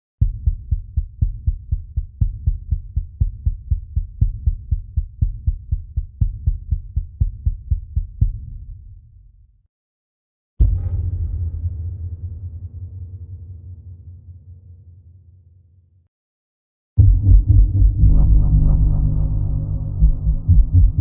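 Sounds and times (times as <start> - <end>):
heartbeat thumps: 0.2 - 8.5, 17.0 - 21.0
low drone: 17.0 - 21.0.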